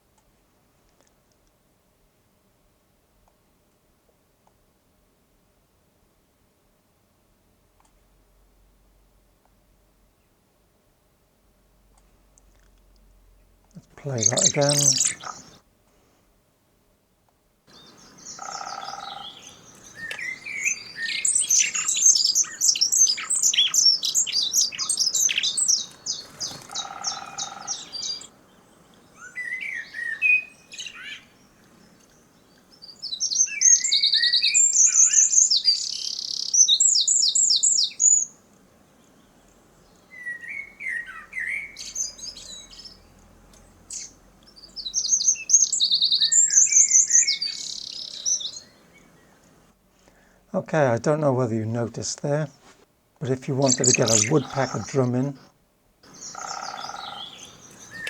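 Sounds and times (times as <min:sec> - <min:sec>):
songbirds singing: 0:12.3 - 0:15.6, 0:17.7 - 0:58.0
woodpecker drumming: 0:13.8 - 0:15.6, 0:17.7 - 0:28.3, 0:53.2 - 0:58.0.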